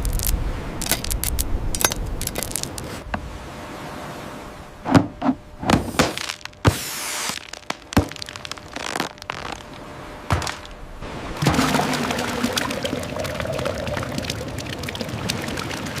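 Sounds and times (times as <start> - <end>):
irregular knocks and thuds: 4.9 - 6.1, 10.3 - 10.6.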